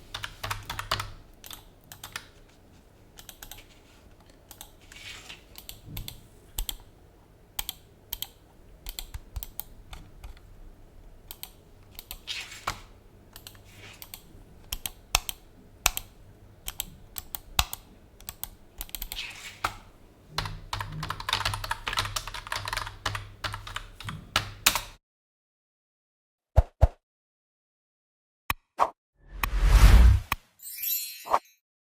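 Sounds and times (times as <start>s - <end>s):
typing on a keyboard: 0.1s - 2.3s, 3.2s - 4.8s, 5.6s - 6.9s, 7.6s - 10.5s, 11.3s - 19.8s, 20.4s - 25.0s.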